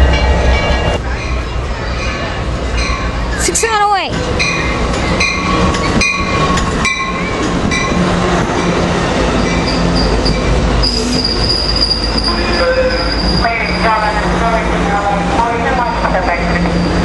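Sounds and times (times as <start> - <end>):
train rumble: 0.0 - 17.0
steel wheels squealing: 9.4 - 14.1, 15.7 - 17.0.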